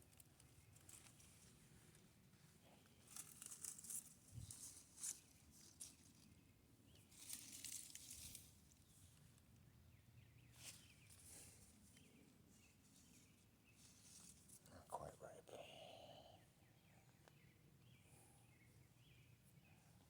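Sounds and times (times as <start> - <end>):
leaves and plant stems rustling: 0.1 - 6.4, 7.0 - 9.2, 10.5 - 14.7.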